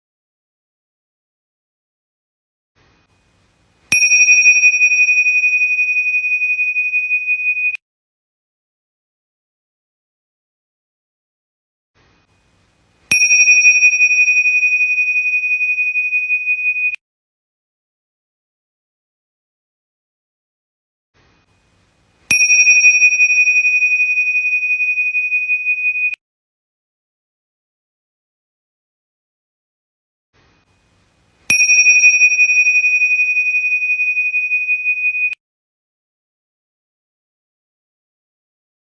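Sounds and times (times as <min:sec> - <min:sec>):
small bell ringing: 0:03.9 - 0:07.8, 0:13.1 - 0:17.0, 0:22.3 - 0:26.2, 0:31.5 - 0:35.4.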